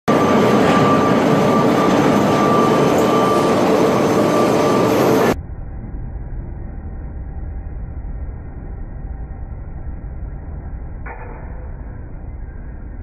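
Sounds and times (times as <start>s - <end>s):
faint steady whistle: 0.1s - 5.4s
muffled low rumble: 5.2s - 13.0s.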